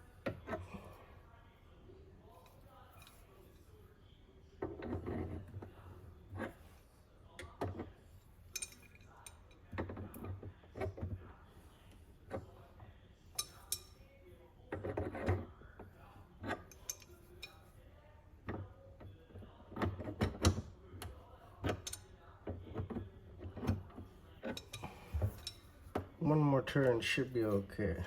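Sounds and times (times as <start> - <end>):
metal wrench clinking on fitting: 8.5 - 9.6, 13.4 - 14.0, 16.6 - 17.7, 24.4 - 25.8.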